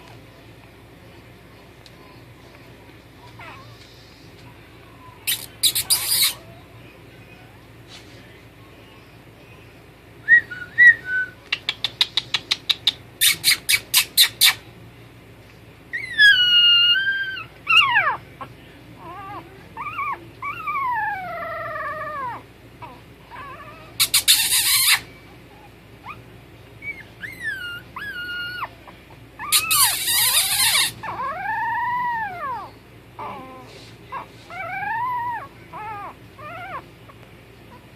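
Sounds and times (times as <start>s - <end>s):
puppies whining: 3.1s - 7.7s, 12.6s - 14.7s, 15.9s - 37.9s
harsh puppy cries: 5.3s - 6.4s, 15.9s - 18.2s, 19.0s - 25.1s, 26.8s - 36.9s
puppies yipping: 5.3s - 6.5s, 12.8s - 14.6s, 15.9s - 18.3s, 19.0s - 26.2s, 26.8s - 37.9s.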